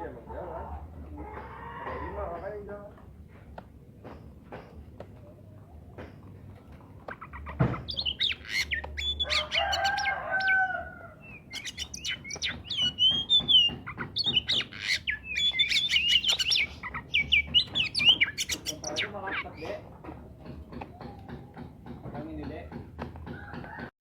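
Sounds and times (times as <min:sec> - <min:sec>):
low drawn-out bird call: 0:07.2 - 0:19.6
bird singing whistles and trills: 0:07.2 - 0:19.7.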